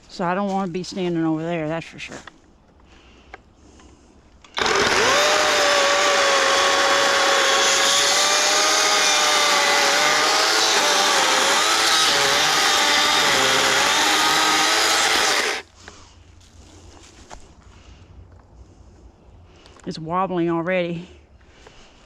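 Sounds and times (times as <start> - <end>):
electric chainsaw cutting wood: 4.5 - 15.6.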